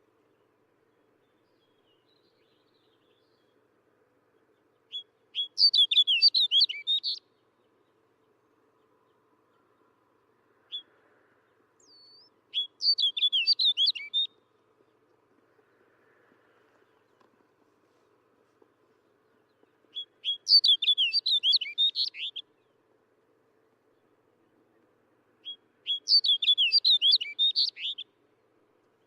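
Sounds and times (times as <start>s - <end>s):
bird warbling song: 4.4s - 8.0s, 11.8s - 14.4s, 19.0s - 22.8s, 24.0s - 28.2s.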